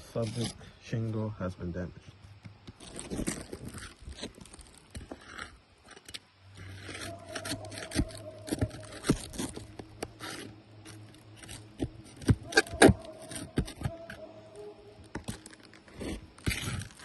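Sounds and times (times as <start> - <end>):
low steady hum: 0.0 - 17.0
tool scraping roof shingles: 2.7 - 14.3, 15.0 - 17.0.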